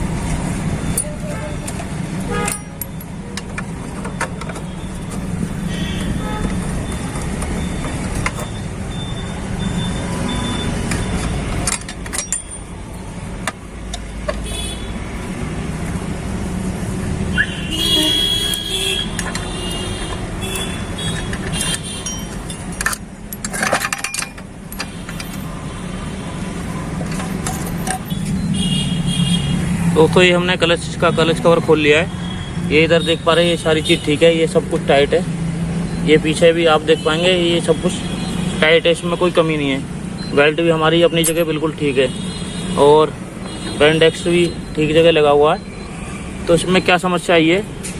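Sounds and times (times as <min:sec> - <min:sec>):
low traffic-like hum: 0:00.0 - 0:47.9
sharp clicks and knocks: 0:00.2 - 0:08.7, 0:10.6 - 0:12.6, 0:13.4 - 0:14.5, 0:18.5 - 0:25.6, 0:26.8 - 0:28.4
hand tools clinking on metal: 0:00.9 - 0:05.3, 0:10.8 - 0:12.7, 0:20.6 - 0:25.6, 0:27.0 - 0:28.4.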